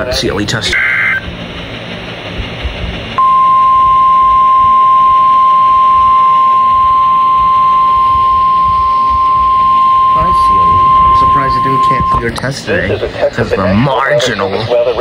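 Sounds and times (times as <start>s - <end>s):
steady alarm tone: 3.2s - 12.4s.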